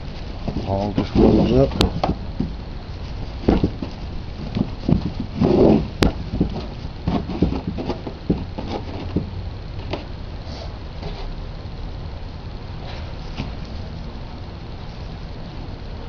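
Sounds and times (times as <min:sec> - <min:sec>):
tool roll rustling: 0:00.0 - 0:10.2
tools knocking inside roll: 0:00.4 - 0:02.6, 0:03.4 - 0:10.1.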